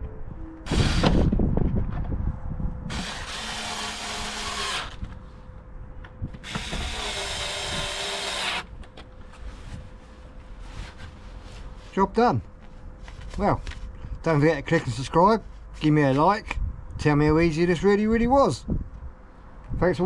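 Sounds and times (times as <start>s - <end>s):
cordless screwdriver running: 2.9s - 5.0s, 6.4s - 8.7s.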